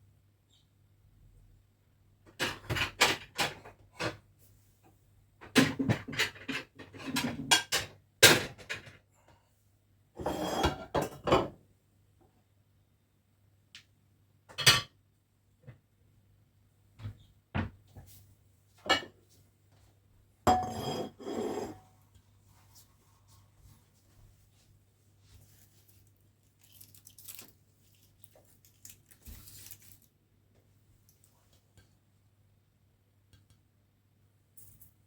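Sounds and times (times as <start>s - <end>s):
dishes and pots clinking: 10.2s - 11.6s, 18.8s - 19.2s, 20.5s - 21.9s.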